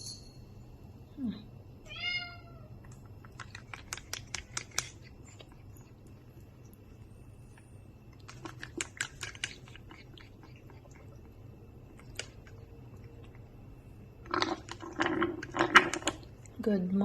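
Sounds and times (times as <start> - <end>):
beak clicking and smacking: 2.8 - 6.9, 7.5 - 13.6.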